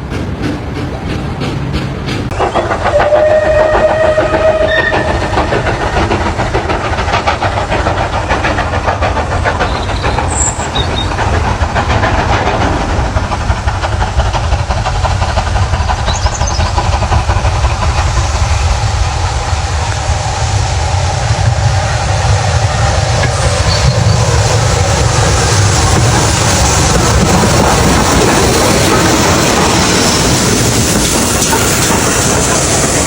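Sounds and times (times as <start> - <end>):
steam train rumbling and clattering: 0.0 - 33.0
train whistle blast: 2.6 - 6.1.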